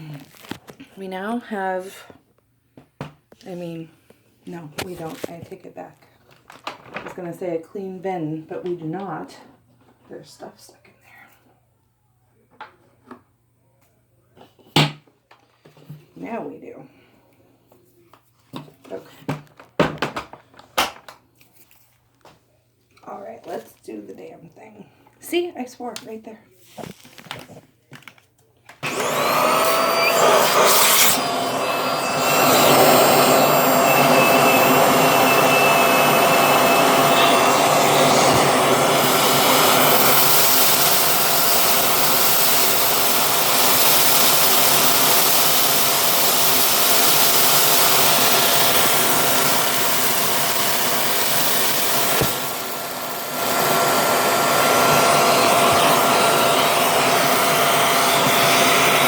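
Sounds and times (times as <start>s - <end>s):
vacuum cleaner motor whining: 28.8s - 59.0s.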